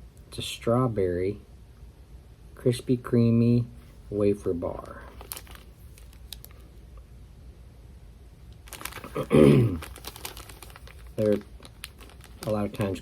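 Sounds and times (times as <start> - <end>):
man clearing throat: 9.0 - 9.9.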